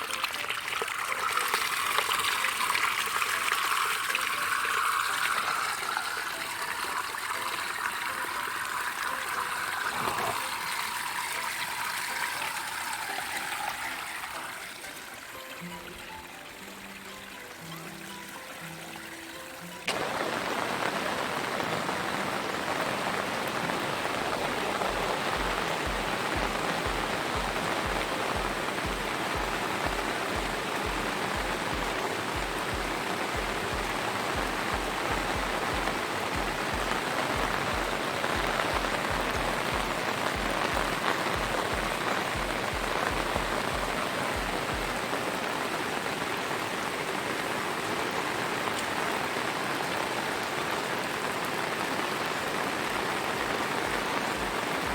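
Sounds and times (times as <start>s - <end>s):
hiss of falling water: 0.0s - 54.9s.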